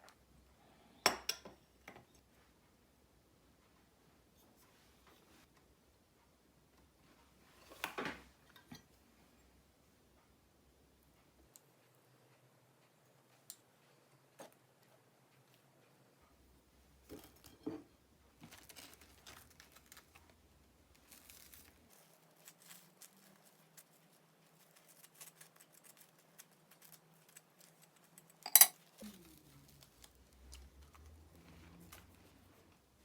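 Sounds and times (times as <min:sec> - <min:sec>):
light crinkling and tapping: 0:17.0 - 0:32.9.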